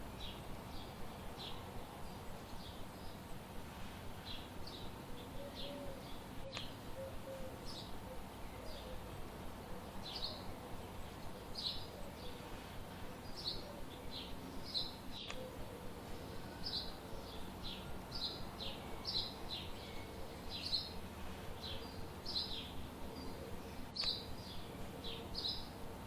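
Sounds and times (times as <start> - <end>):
small songbirds chirping: 0.0 - 26.0
steady background hiss: 0.0 - 26.0
sharp click: 15.2 - 15.4.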